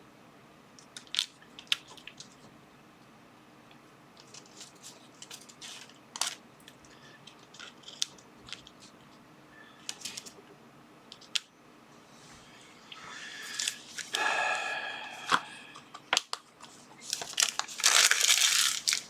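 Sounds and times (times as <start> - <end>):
packaging rustling: 17.1 - 19.0.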